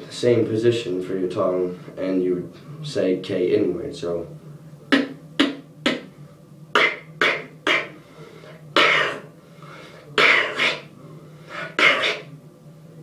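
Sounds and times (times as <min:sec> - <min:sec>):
beatboxed inward snare: 0:04.9 - 0:08.0, 0:08.8 - 0:09.3, 0:10.2 - 0:10.9, 0:11.6 - 0:12.3.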